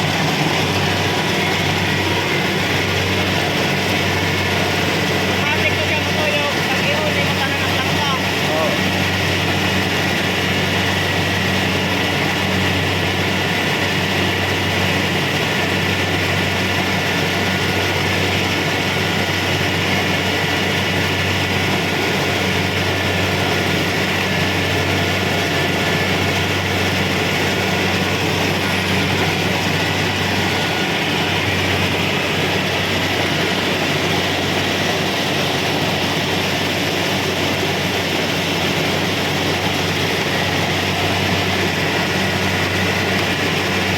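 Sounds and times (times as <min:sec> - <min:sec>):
combine harvester diesel engine drone: 0:00.0 - 0:43.9
rush of machinery noise: 0:00.0 - 0:43.9.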